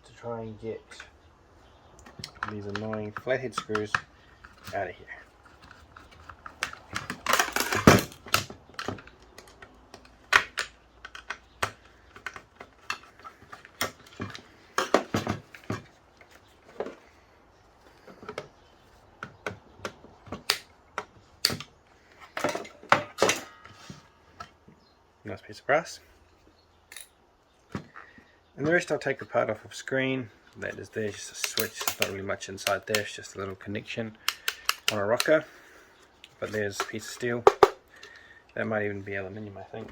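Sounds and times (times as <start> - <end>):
screwdriver clicking on screws: 34.2 - 35.4.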